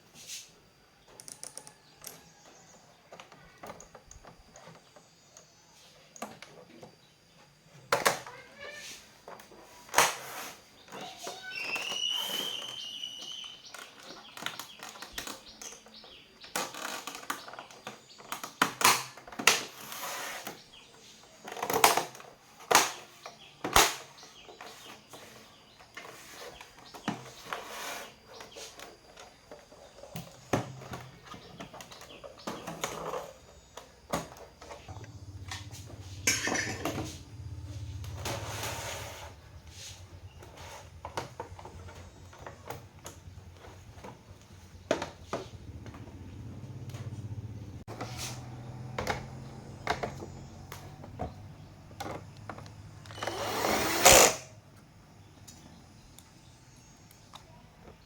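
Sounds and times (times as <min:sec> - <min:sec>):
tools clicking and knocking: 0:01.1 - 0:05.5, 0:36.2 - 0:37.1.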